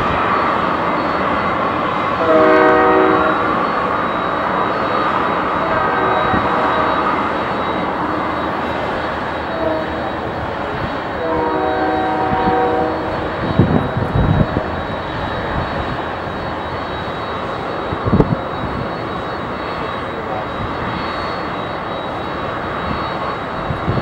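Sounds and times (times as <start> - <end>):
jet engines rushing hum: 0.0 - 24.0
wind buffeting microphone: 3.0 - 24.0.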